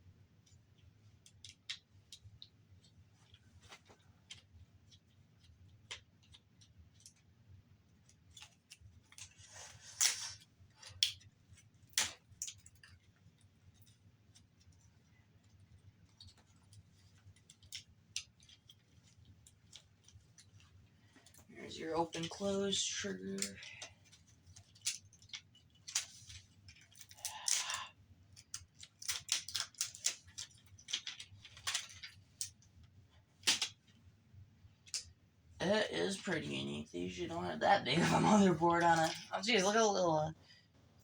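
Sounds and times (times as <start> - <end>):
plastic and metal parts clicking: 23.4 - 27.7, 28.3 - 32.7
sharp plastic snaps: 23.4 - 32.6, 33.4 - 34.0.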